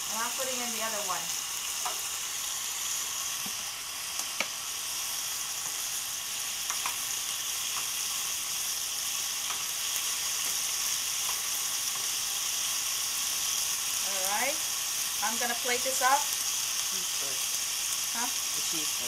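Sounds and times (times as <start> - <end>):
meat and vegetables sizzling in pan: 0.0 - 19.0.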